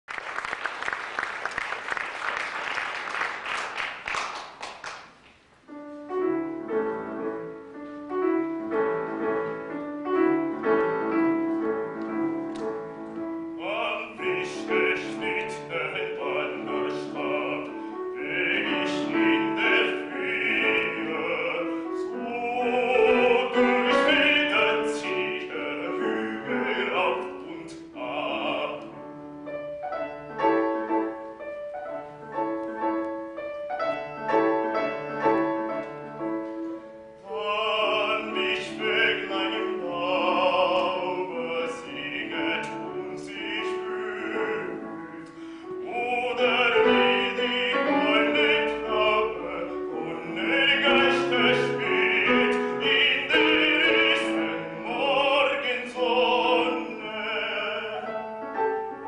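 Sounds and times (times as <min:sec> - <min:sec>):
audience applause: 0:00.0 - 0:05.2
piano accompaniment: 0:00.0 - 0:59.0
baritone singing: 0:06.1 - 0:31.4, 0:34.0 - 0:59.0.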